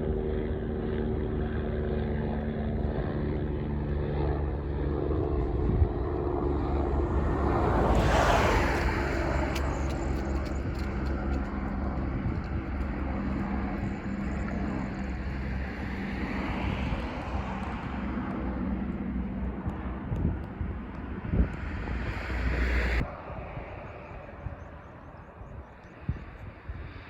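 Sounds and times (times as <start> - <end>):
wind buffeting microphone: 0.0 - 27.0
low rumble: 4.8 - 25.0.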